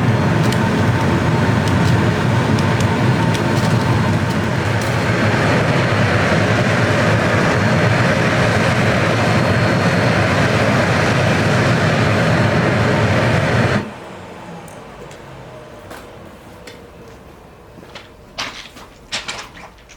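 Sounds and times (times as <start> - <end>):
burner flame rushing: 0.0 - 14.0.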